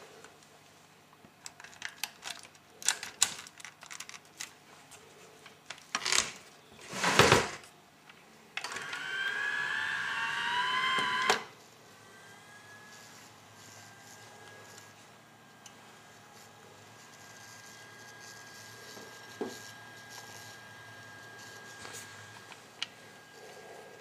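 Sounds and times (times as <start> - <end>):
motor whine: 8.6 - 24.0.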